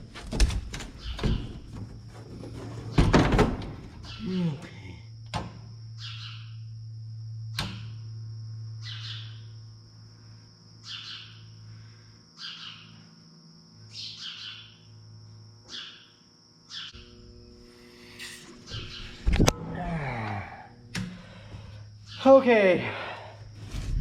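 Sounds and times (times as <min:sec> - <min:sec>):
steady low hum: 0:00.0 - 0:24.0
thin high whine: 0:04.1 - 0:12.1, 0:16.9 - 0:24.0
birds chirping: 0:06.0 - 0:06.6, 0:08.8 - 0:09.6, 0:10.8 - 0:11.6, 0:12.4 - 0:13.0, 0:13.9 - 0:15.0, 0:18.6 - 0:19.3, 0:21.9 - 0:22.8.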